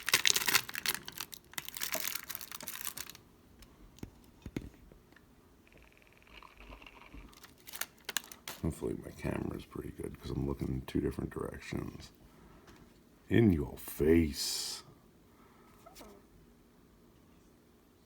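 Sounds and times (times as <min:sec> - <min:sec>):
wrapper crinkling and tearing: 0:00.0 - 0:03.2, 0:07.2 - 0:08.9.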